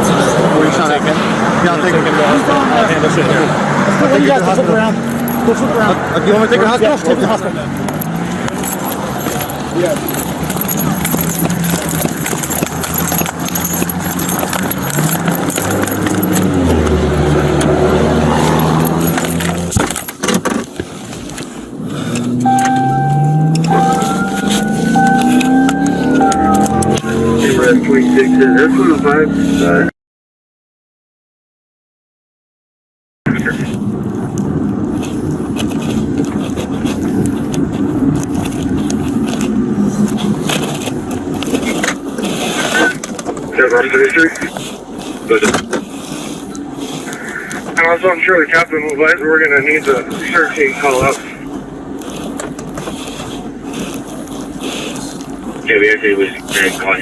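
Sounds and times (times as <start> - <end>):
vehicle engine running: 0.0 - 29.9, 33.3 - 57.0
duty gear clattering and jingling: 7.7 - 17.3, 18.4 - 27.3
small clicks and rattles: 7.8 - 17.0
steady high tone: 22.4 - 29.4.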